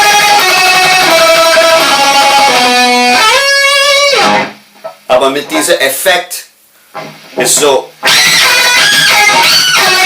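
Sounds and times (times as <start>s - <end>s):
electric guitar playing held notes: 0.0s - 4.7s, 8.0s - 10.0s.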